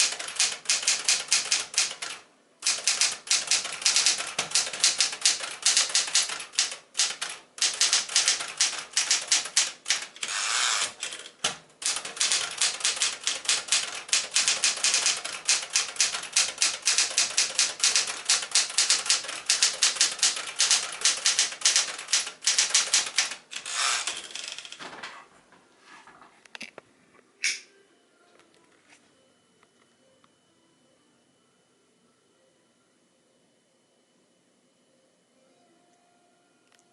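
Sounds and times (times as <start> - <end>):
manual typewriter keystrokes clattering: 0.0 - 25.0.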